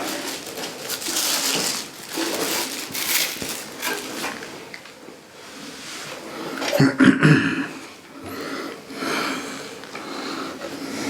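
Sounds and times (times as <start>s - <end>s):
packing material rustling: 0.0s - 4.8s.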